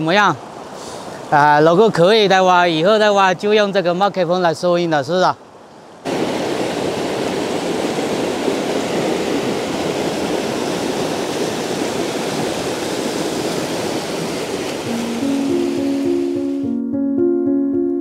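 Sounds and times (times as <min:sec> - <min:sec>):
river water rushing: 0:00.0 - 0:03.3, 0:05.5 - 0:16.6
soft piano music: 0:14.8 - 0:18.0.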